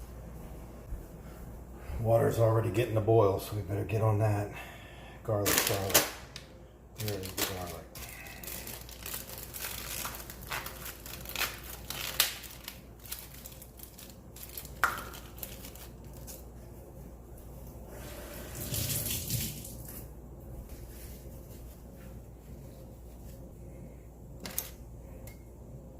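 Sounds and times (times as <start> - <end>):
garlic skin crinkling and tearing: 7.0 - 16.4.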